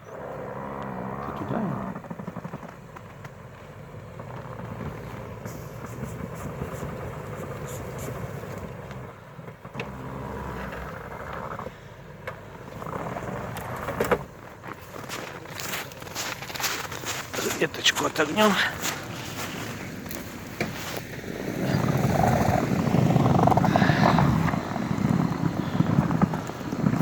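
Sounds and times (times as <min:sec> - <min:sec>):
off-road vehicle engine running: 0:00.0 - 0:27.0.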